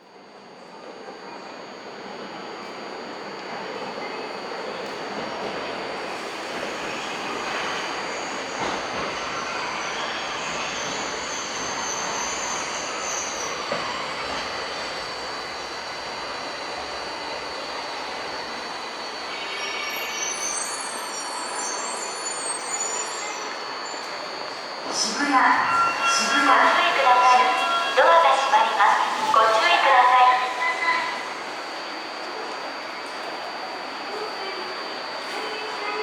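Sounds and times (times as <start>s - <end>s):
subway train rumble: 0.0s - 36.0s
high-pitched train squeals: 3.6s - 36.0s.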